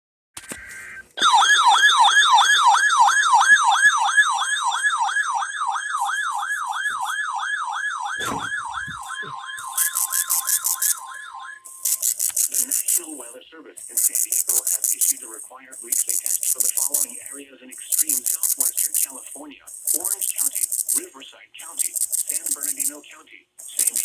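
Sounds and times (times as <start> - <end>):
electronic yelp siren: 0.5 - 24.0
rapid high-pitched pulsing: 5.9 - 7.5, 8.1 - 24.0
single-pitch alert tone: 8.2 - 13.1.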